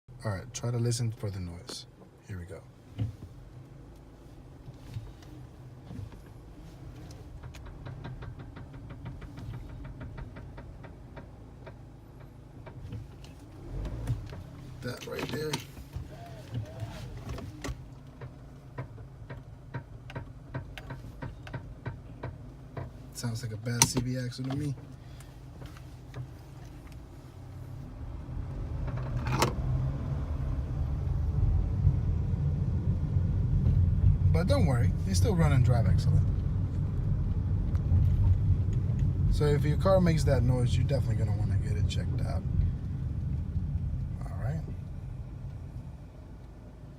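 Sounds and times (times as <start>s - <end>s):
low rumble of moving car: 0.0s - 46.9s
rapid clicking from car axle: 7.0s - 27.0s.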